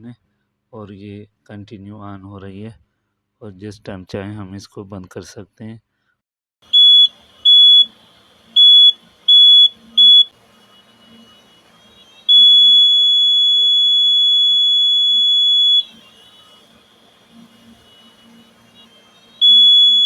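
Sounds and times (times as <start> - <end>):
high-pitched alarm buzzer beeping: 6.7 - 20.0.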